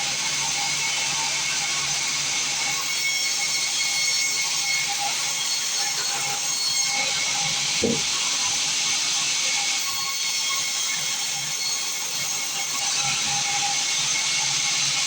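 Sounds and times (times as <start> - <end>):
low knock: 7.8 - 8.1.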